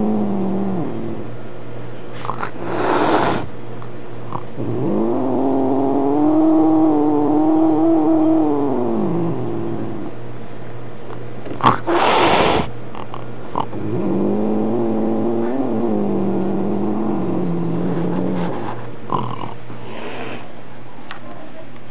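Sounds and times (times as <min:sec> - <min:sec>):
cat hissing: 0:02.1 - 0:03.5, 0:04.3 - 0:10.1, 0:11.6 - 0:12.7, 0:13.6 - 0:18.8, 0:19.8 - 0:20.5
cat yowling: 0:04.6 - 0:10.1.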